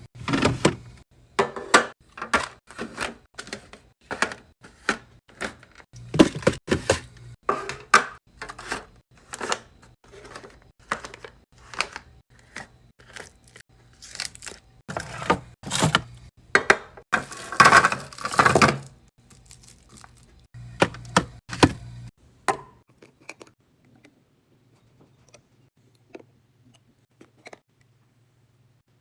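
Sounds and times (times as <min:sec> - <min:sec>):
packaging crinkling: 0:19.2 - 0:20.4.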